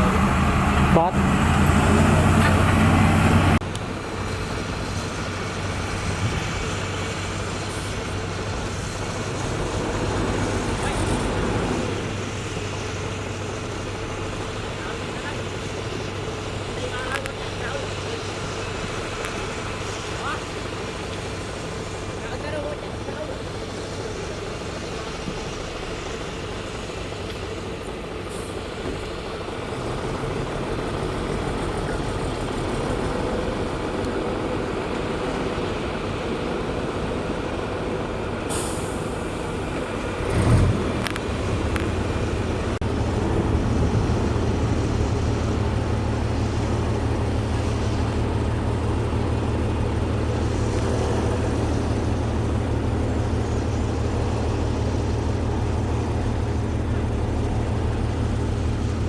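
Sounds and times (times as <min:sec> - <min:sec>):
diesel engine of heavy machinery: 0:00.0 - 0:59.0
brief hiss: 0:07.6 - 0:08.4, 0:38.5 - 0:40.3.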